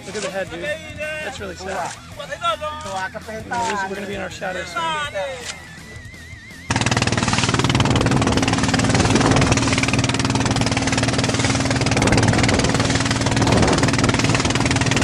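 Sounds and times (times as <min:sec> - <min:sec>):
boat engine running: 0:00.0 - 0:15.0.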